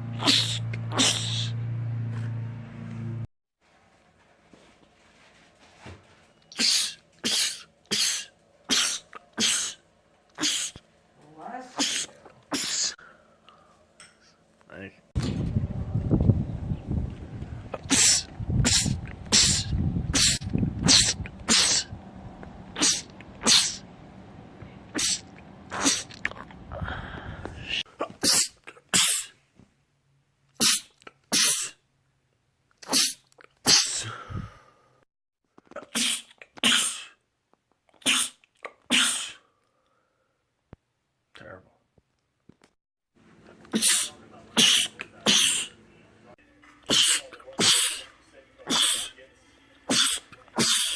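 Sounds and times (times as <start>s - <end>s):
person sneezing: 0.2s - 1.5s, 6.5s - 9.8s, 10.4s - 10.8s, 11.7s - 13.0s, 17.9s - 21.9s, 22.8s - 23.8s, 24.9s - 26.2s, 27.6s - 29.4s, 30.6s - 31.8s, 32.8s - 34.3s, 35.8s - 37.2s, 38.0s - 39.5s, 43.7s - 45.8s, 46.8s - 49.2s, 49.9s - 50.9s
low rumble: 15.2s - 25.7s.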